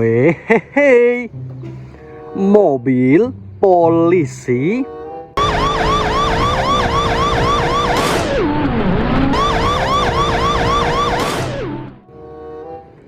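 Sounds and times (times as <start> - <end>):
police siren yelping: 5.4 - 12.0.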